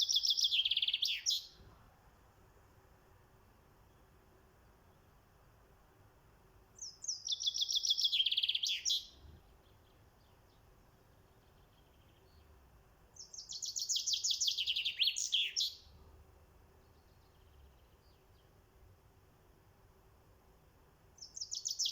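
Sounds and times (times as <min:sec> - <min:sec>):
songbird trilling: 0:00.0 - 0:01.6, 0:06.8 - 0:09.2, 0:13.2 - 0:15.9, 0:21.2 - 0:21.9.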